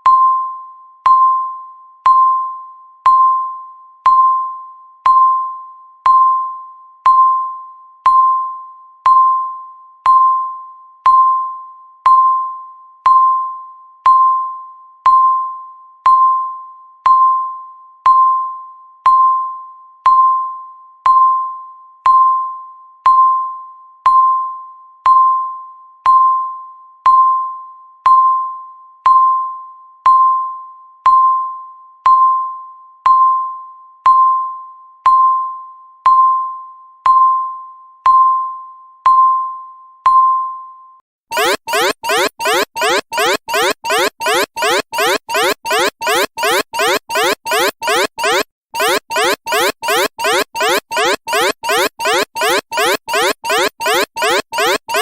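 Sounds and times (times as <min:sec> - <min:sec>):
electronic timer ping: 0:41.3 - 0:55.0.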